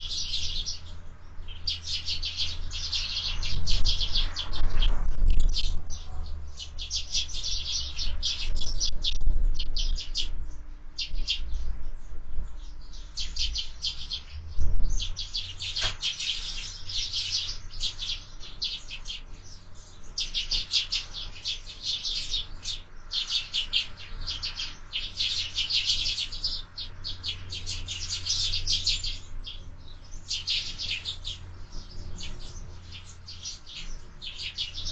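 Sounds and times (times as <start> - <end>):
sparrows chirping: 0.0 - 34.9
wind on microphone: 2.3 - 16.7.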